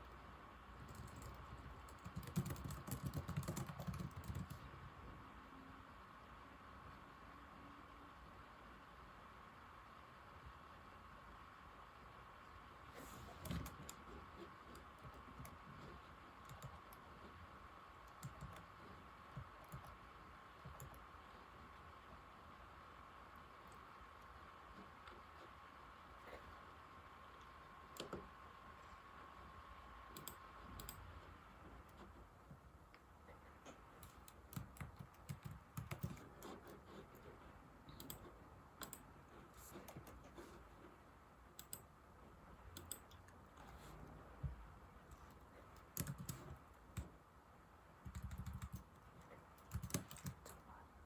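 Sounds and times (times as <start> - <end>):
faint steady hiss: 0.0 - 51.0
laptop keyboard typing: 0.8 - 4.8, 13.0 - 21.4, 27.4 - 28.3, 30.1 - 32.6, 33.6 - 40.9, 41.5 - 42.0, 42.7 - 43.9, 45.1 - 47.2, 48.0 - 50.8.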